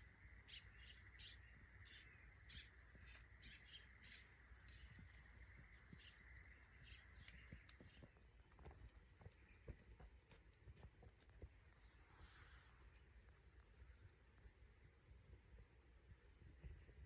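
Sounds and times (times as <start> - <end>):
soft bird chirps: 0.0 - 15.3
wood fire crackling: 0.0 - 17.0.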